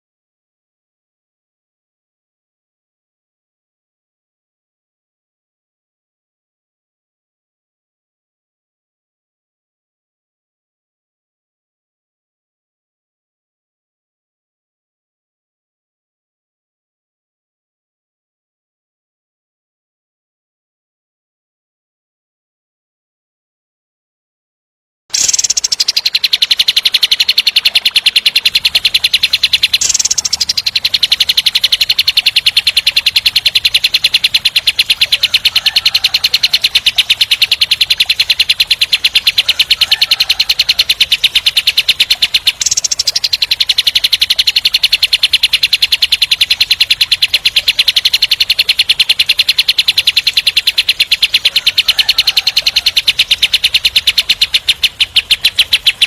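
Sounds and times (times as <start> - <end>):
songbird fast rattling trill: 25.1 - 56.0.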